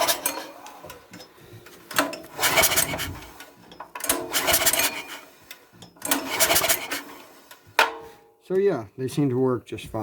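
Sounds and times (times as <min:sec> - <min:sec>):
recoil starter cord pulled: 0:00.0 - 0:01.0, 0:01.9 - 0:07.6.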